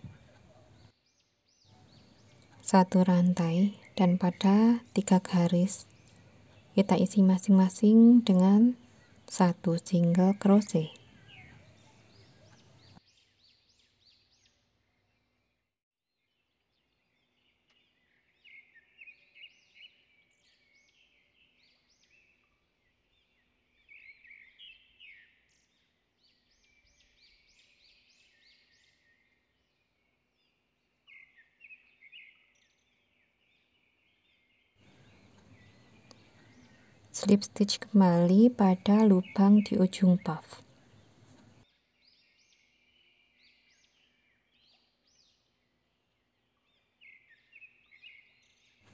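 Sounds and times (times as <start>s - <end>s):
faint bird chirps: 0.0s - 15.6s, 16.5s - 48.9s.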